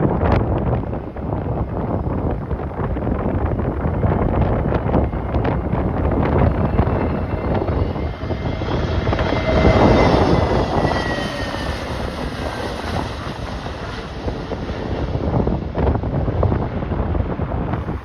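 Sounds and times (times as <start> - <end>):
jet airliner passing: 0.0 - 18.0
wind buffeting microphone: 0.0 - 18.0.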